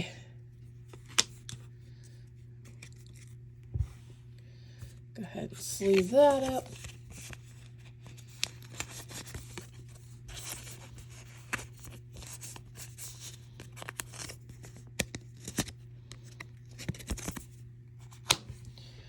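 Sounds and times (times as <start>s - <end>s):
low steady hum: 0.0s - 19.0s.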